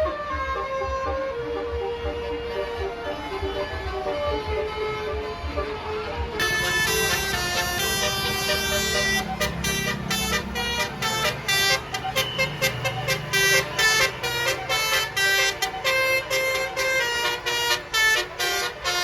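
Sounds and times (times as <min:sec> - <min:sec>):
bus engine rumble: 0:00.0 - 0:19.0
musical air horn: 0:00.0 - 0:19.0.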